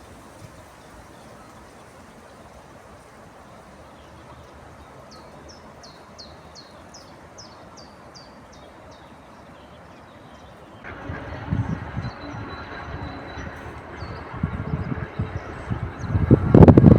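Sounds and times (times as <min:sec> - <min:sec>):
outdoor background hiss: 0:00.0 - 0:16.9.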